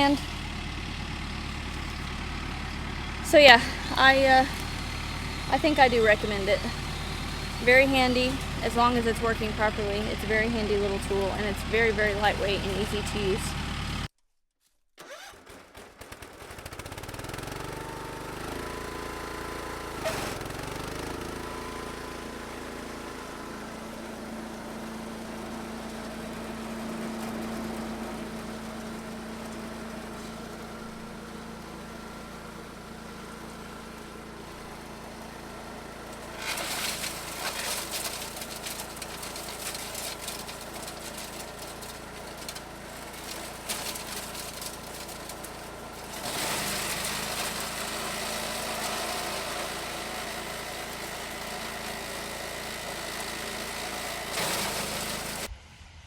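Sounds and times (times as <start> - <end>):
engine running: 0.0 - 14.1, 15.0 - 56.0
rapid crackling rattle: 36.1 - 46.8.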